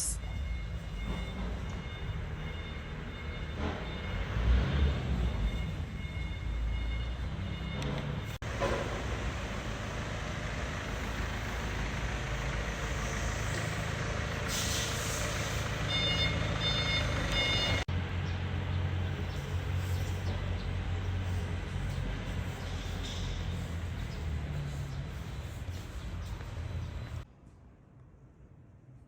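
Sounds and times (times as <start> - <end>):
reversing alarm beeps: 0.0 - 8.4, 15.8 - 17.9
heavy vehicle engine running: 7.6 - 27.3.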